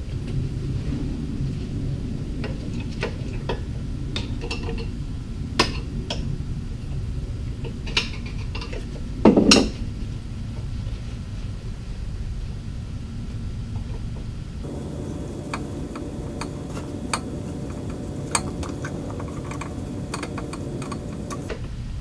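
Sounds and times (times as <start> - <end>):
metallic clinks and taps of tools: 14.6 - 21.5
low background hum: 14.6 - 21.6.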